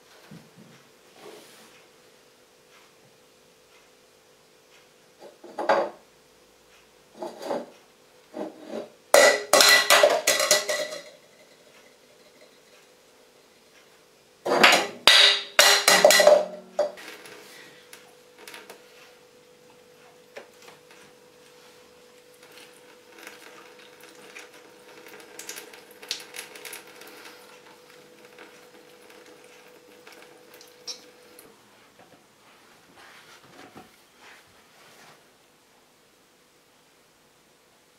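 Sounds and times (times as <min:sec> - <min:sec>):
faint steady hum: 0:00.0 - 0:37.9
hard objects clattering: 0:09.2 - 0:11.2, 0:14.5 - 0:17.4.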